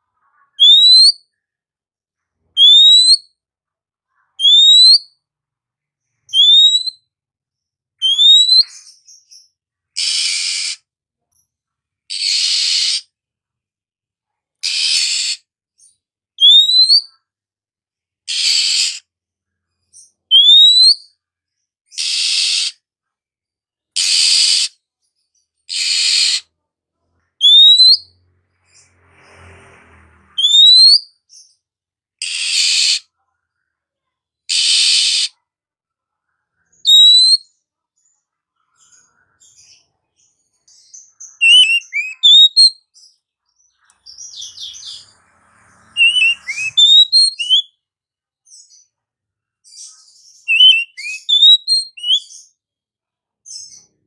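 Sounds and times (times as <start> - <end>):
bird whistled notes: 6.3 - 7.0, 8.0 - 8.8, 27.4 - 28.1, 30.4 - 31.2, 41.4 - 42.8, 46.0 - 47.7, 50.4 - 52.3
bird harsh rasping calls: 10.0 - 10.8, 12.1 - 13.1, 14.6 - 15.5, 18.3 - 19.0, 21.9 - 22.8, 24.0 - 24.8, 25.7 - 26.5, 27.4 - 28.2, 34.5 - 35.4, 41.2 - 42.8, 44.0 - 47.7, 50.4 - 52.3.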